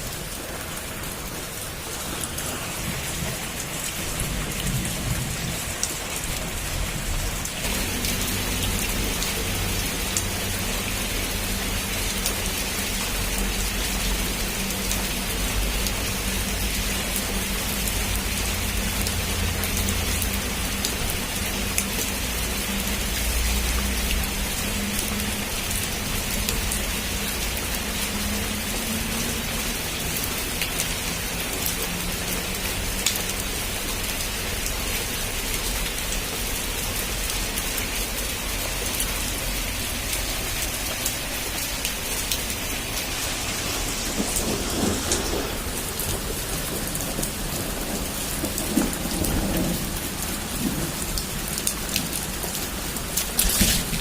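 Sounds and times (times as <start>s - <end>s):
heavy rain pouring: 0.0s - 54.0s
low thunder rumbles: 2.2s - 9.9s, 42.4s - 51.2s.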